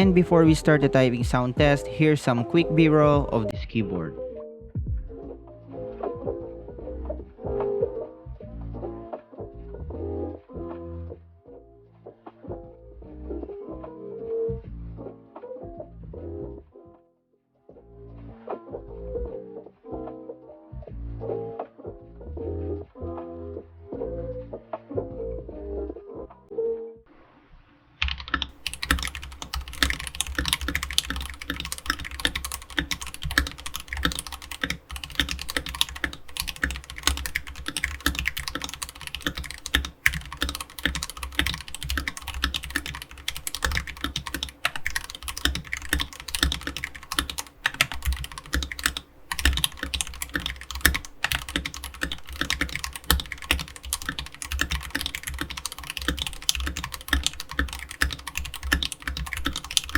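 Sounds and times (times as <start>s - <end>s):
fast mechanical keyboard typing: 0.0s - 1.8s, 28.0s - 59.9s.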